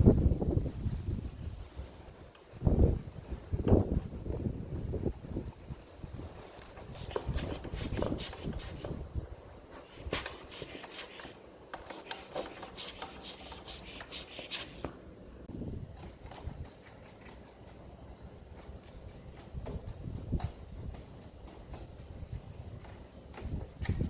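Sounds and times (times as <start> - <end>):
quick rubbing strokes: 6.9 - 9.0, 9.7 - 15.0, 16.2 - 24.0.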